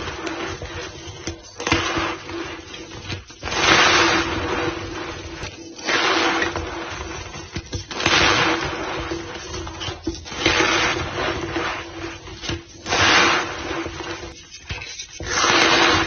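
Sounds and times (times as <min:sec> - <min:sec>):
chalk powder squeaking and crunching: 0:00.0 - 0:16.0.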